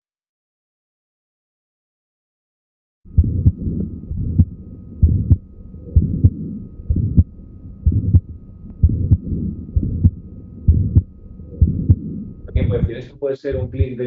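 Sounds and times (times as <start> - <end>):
faint high hum: 3.1 - 14.0
heartbeat through stethoscope: 3.1 - 14.0.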